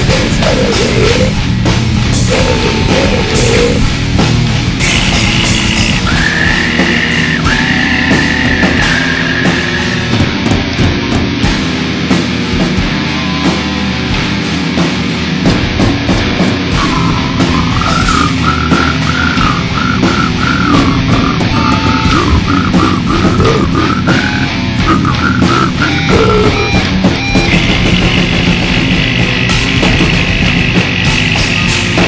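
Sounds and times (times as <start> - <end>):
rapid drumming: 0.0 - 13.0, 14.9 - 32.0
distorted death metal band: 0.0 - 32.0
sustained high tone: 4.8 - 10.2, 16.8 - 26.8.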